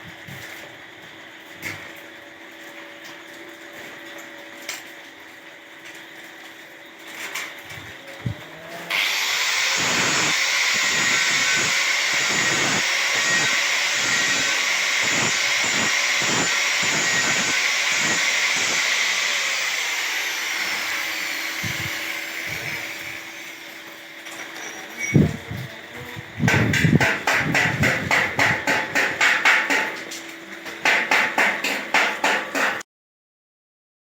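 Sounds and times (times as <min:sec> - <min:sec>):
angle grinder grinding metal: 0:08.2 - 0:29.2.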